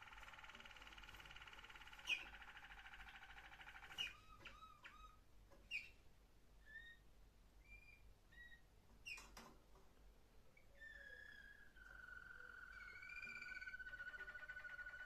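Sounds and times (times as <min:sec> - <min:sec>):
canary trilling: 0:00.0 - 0:06.0, 0:07.6 - 0:09.2, 0:10.6 - 0:15.0
canary whistled notes: 0:10.8 - 0:15.0
sharp upward chirps: 0:10.9 - 0:15.0.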